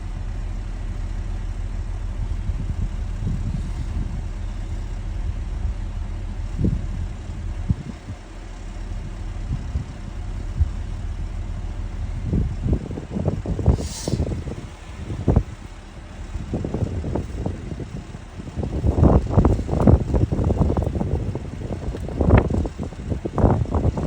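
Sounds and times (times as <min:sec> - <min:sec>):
diesel engine idling: 0:00.0 - 0:24.0.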